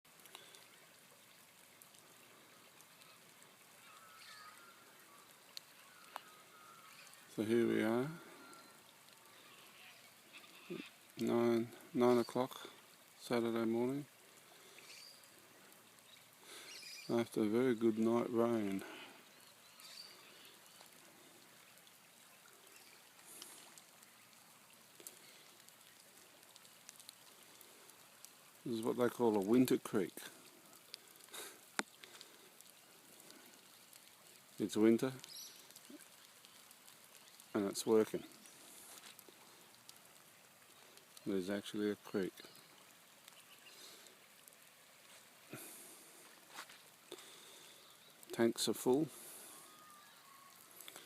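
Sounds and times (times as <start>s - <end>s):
faint creek running: 0.0s - 51.0s
faint clicks: 0.2s - 0.8s, 1.4s - 7.3s, 18.2s - 28.6s, 30.1s - 37.6s, 38.2s - 41.3s, 49.3s - 51.0s
faint bird chirps: 3.8s - 11.0s, 14.8s - 15.4s, 16.1s - 17.2s, 19.2s - 20.9s, 42.4s - 44.0s, 47.5s - 48.2s, 49.4s - 50.8s.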